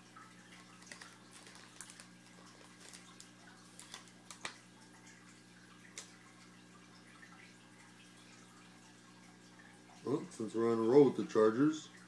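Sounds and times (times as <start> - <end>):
low steady hum: 0.0 - 12.0
trading cards being handled: 0.7 - 4.6.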